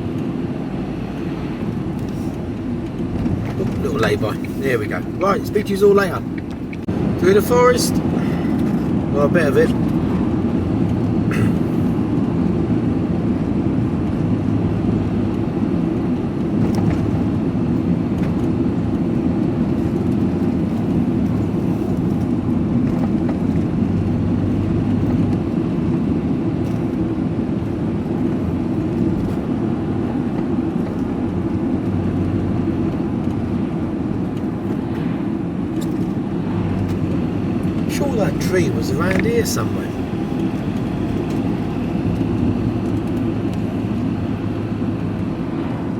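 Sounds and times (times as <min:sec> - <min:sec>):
vehicle engine and road noise: 0:00.0 - 0:45.9.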